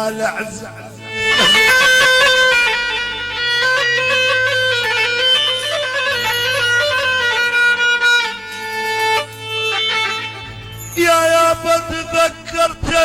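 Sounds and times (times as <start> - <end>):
reedy lead melody: 1.0 - 3.6.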